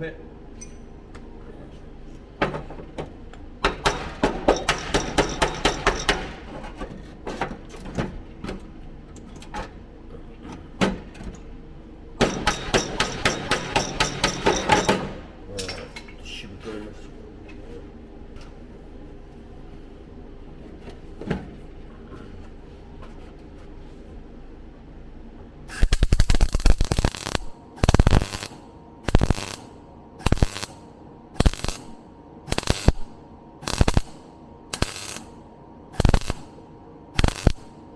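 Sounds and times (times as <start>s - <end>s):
hammer tapping on sheet steel: 3.6s - 6.5s, 12.2s - 15.1s
faint steady hum: 8.7s - 37.9s
welder crackling: 25.7s - 30.8s, 31.4s - 35.3s, 36.0s - 36.6s, 37.2s - 37.7s.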